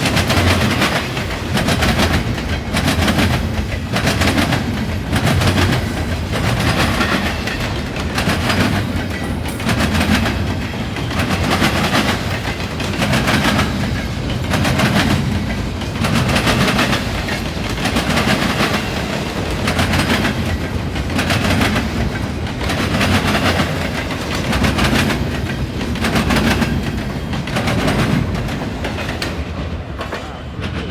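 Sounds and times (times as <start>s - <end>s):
freight train passing: 0.0s - 30.9s.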